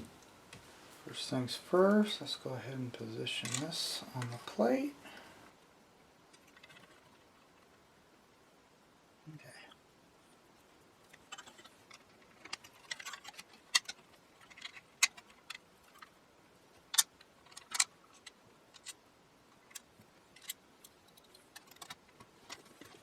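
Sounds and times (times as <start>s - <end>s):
small metal parts clicking: 6.3s - 7.7s, 11.1s - 16.2s, 16.8s - 19.0s, 19.6s - 23.0s.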